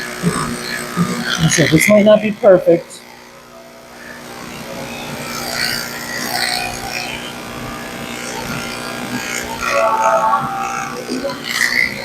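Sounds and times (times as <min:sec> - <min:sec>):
electric clippers motor hum: 0:03.0 - 0:09.7.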